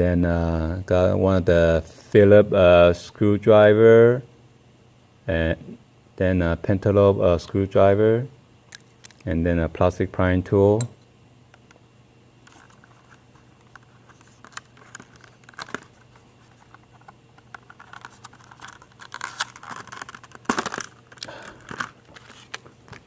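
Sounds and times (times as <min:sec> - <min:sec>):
packaging rustling and crinkling: 0:12.5 - 0:23.0.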